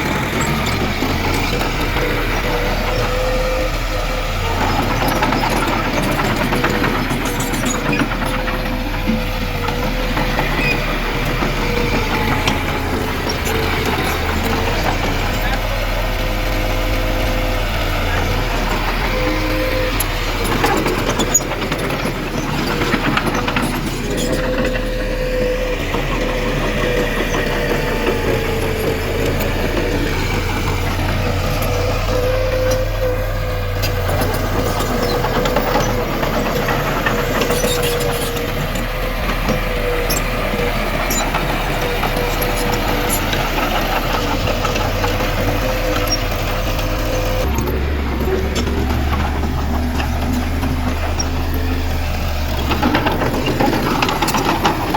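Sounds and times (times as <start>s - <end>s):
heavy machinery diesel engine: 0.0s - 54.9s.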